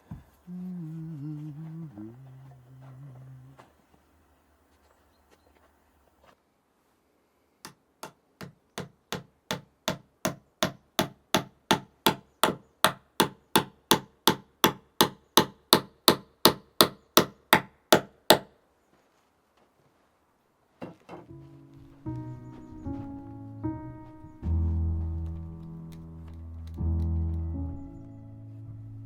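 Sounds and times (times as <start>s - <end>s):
sharp knocks: 7.7s - 18.5s.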